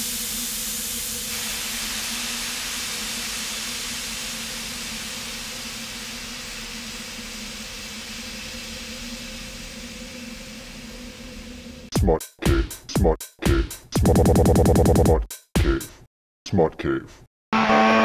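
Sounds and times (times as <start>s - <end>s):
steady broad hiss: 0.0s - 11.9s.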